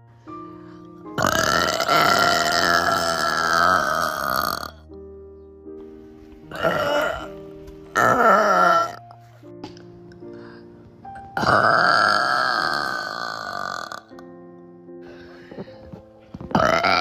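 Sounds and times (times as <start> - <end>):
background music: 0.0 - 17.0
girl burping loudly: 1.2 - 4.8, 6.5 - 7.4, 8.0 - 9.0, 11.3 - 14.2, 16.4 - 17.0.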